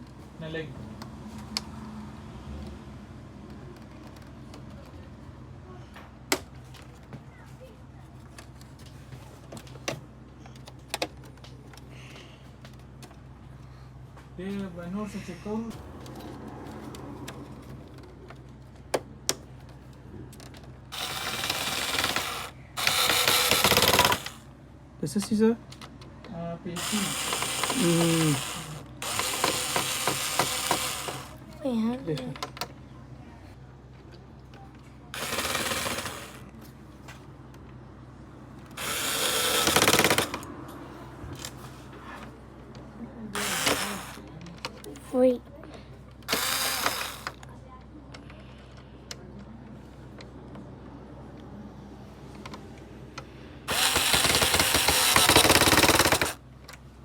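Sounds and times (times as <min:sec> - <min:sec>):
electric screwdriver whirring: 0:20.9 - 0:24.4, 0:26.8 - 0:31.4, 0:35.2 - 0:36.4, 0:38.7 - 0:40.5, 0:43.4 - 0:44.2, 0:46.2 - 0:47.4, 0:53.7 - 0:56.4
rapid mechanical ratcheting: 0:20.9 - 0:24.5, 0:26.8 - 0:31.4, 0:35.1 - 0:36.5, 0:38.7 - 0:40.5, 0:43.4 - 0:44.3, 0:46.2 - 0:47.4, 0:53.7 - 0:56.4
rapid clicking: 0:21.0 - 0:24.4, 0:35.2 - 0:36.4, 0:38.8 - 0:40.5, 0:53.7 - 0:56.4
sharp clicks: 0:53.7 - 0:56.8.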